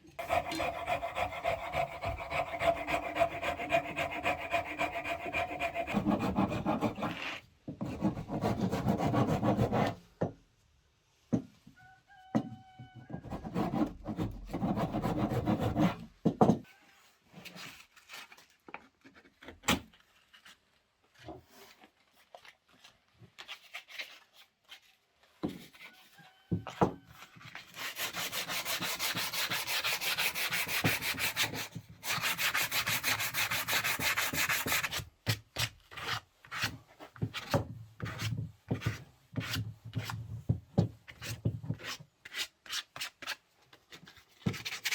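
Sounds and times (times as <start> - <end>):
rasp strokes on wood: 0.2 - 7.4, 27.7 - 35.0.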